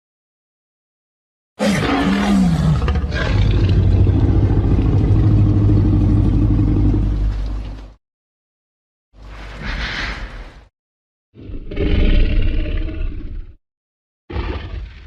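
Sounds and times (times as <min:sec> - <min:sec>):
low rumbling growl: 0:01.6 - 0:08.0.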